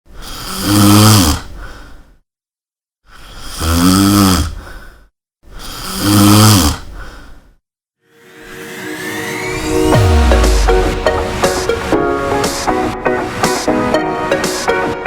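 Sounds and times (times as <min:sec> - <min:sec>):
person snoring: 0:00.2 - 0:01.7, 0:03.1 - 0:05.0, 0:05.6 - 0:07.1.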